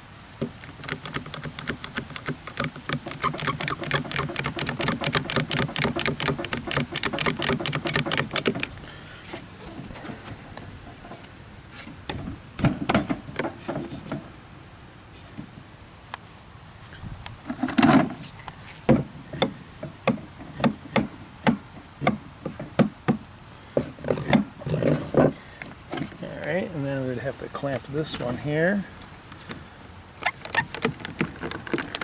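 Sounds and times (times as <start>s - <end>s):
rapid ratcheting clicks: 0.6s - 8.8s.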